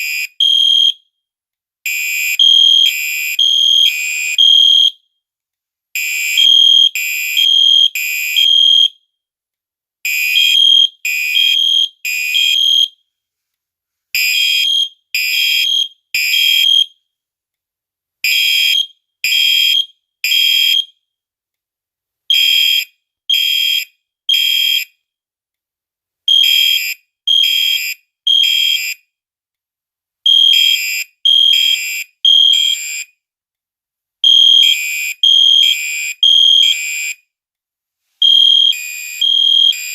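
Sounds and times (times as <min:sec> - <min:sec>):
fire alarm horn blasts: 0:00.0 - 0:01.0, 0:01.9 - 0:05.0, 0:06.0 - 0:09.0, 0:10.1 - 0:12.9, 0:14.2 - 0:16.9, 0:22.3 - 0:24.9, 0:26.3 - 0:29.0, 0:30.3 - 0:33.1, 0:34.2 - 0:37.2, 0:38.2 - 0:39.9.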